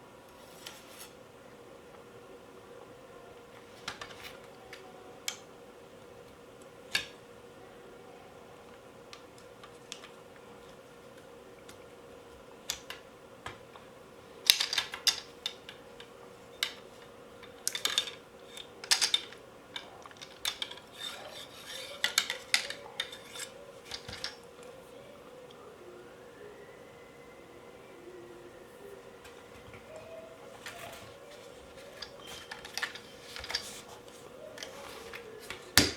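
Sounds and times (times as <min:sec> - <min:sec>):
metal parts clicking and clinking: 0:14.4 - 0:24.8, 0:29.9 - 0:35.9.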